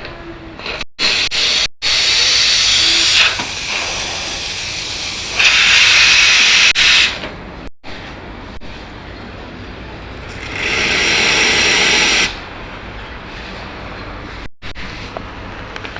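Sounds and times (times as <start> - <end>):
espresso steam wand hissing: 1.0 - 7.2, 10.4 - 12.4.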